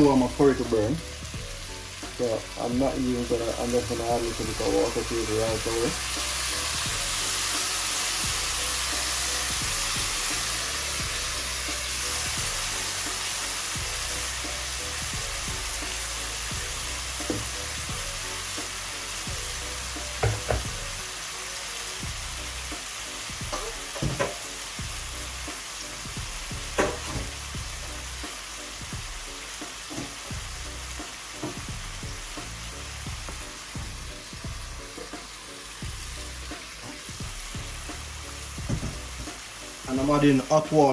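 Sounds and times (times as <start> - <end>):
chicken sizzling in hot oil: 0.0 - 40.9
utensil knocking against pot: 20.2 - 20.7.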